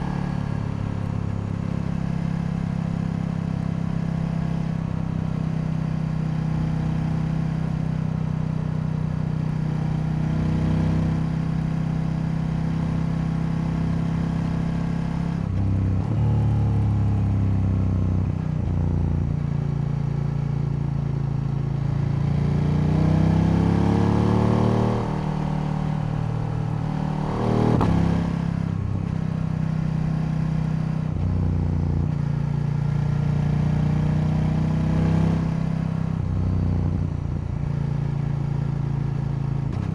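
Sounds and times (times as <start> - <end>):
motorcycle engine revving: 21.9 - 36.9.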